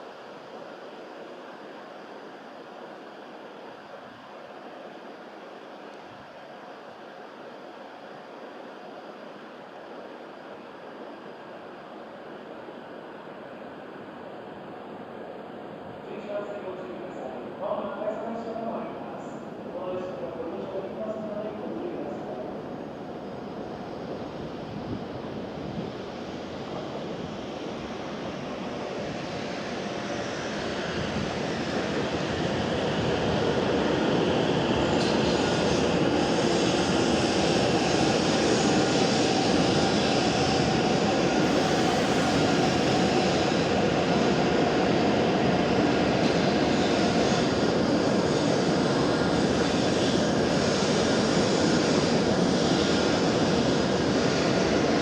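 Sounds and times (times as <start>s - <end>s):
train rushing and rumbling: 16.3s - 55.0s.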